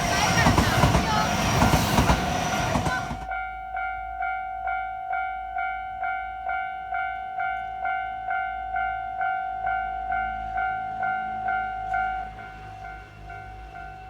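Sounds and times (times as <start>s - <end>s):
passing train rumble: 0.0s - 3.5s, 8.7s - 14.0s
level-crossing warning bell ringing: 0.0s - 14.0s.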